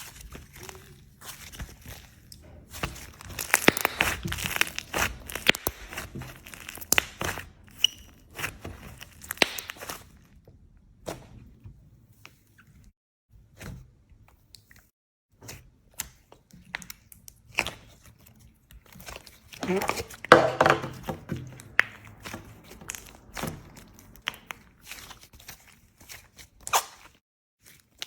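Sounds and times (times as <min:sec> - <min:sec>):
slime squished crackling: 0:00.0 - 0:10.2, 0:18.8 - 0:27.1.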